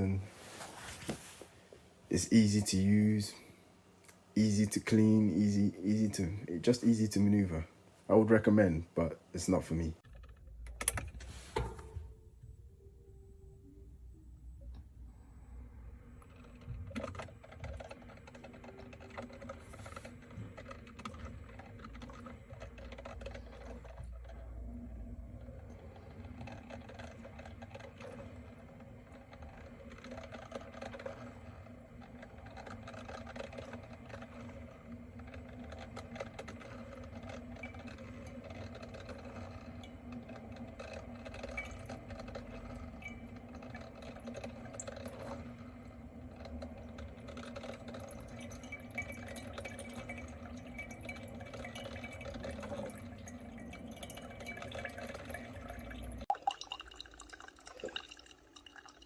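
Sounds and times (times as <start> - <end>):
coffee maker humming: 0.0 - 59.0
water rushing through filter: 36.4 - 59.0.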